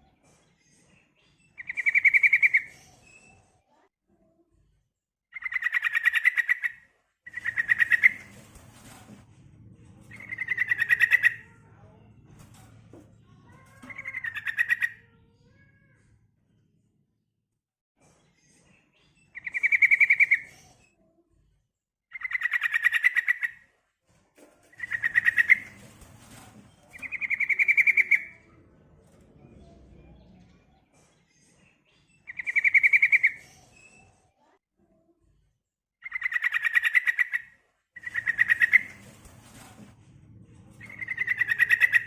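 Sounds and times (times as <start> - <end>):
bird rattling calls: 5.4 - 9.0, 10.2 - 11.4, 24.7 - 28.3, 38.0 - 39.6, 40.8 - 42.0.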